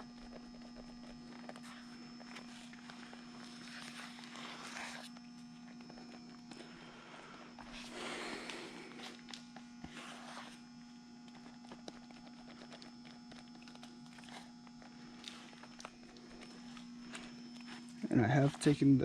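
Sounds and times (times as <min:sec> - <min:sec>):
spreader scraping body filler: 0:00.0 - 0:10.8
steady low hum: 0:00.0 - 0:19.0.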